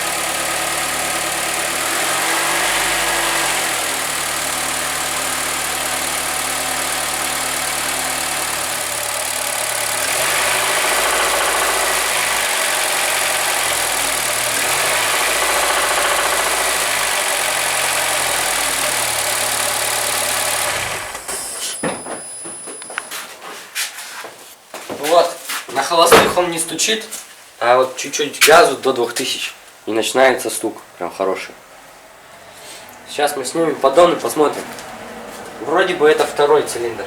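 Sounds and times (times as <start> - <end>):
engine knocking: 0.0 - 21.3
car engine idling and revving: 0.0 - 21.8, 32.2 - 37.0.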